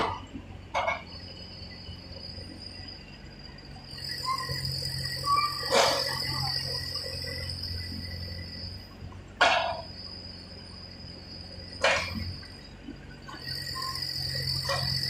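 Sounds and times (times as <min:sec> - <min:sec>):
diesel engine low hum: 0:00.0 - 0:15.0
high-pitched whine: 0:00.0 - 0:15.0.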